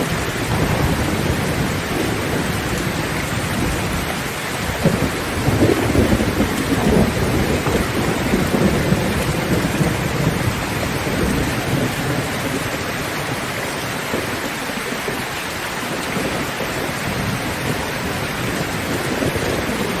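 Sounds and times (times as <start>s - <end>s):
heavy rain on a metal roof: 0.0s - 20.0s
rumble of thunder: 0.0s - 20.0s.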